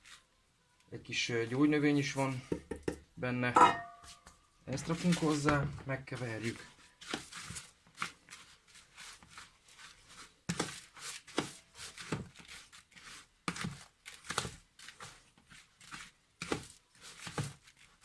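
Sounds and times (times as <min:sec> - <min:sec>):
spoon stirring soft food in bowl: 0:06.2 - 0:18.0.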